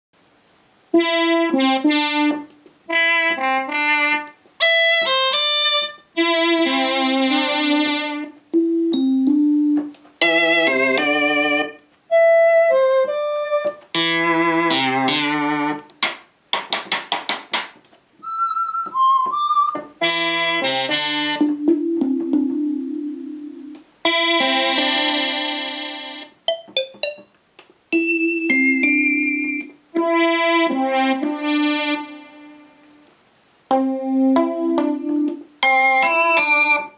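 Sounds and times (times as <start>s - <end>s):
synthesizer keyboard phrases: 18.2s - 27.3s.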